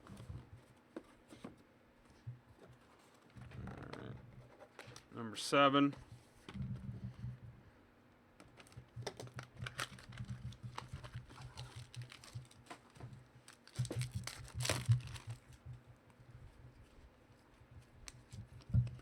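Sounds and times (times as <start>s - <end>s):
card packaging crinkling and tearing: 8.5s - 15.6s.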